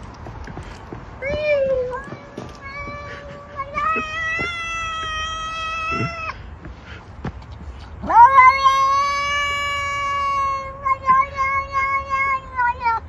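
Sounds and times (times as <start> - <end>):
cat meowing: 1.2 - 6.4, 8.0 - 13.0.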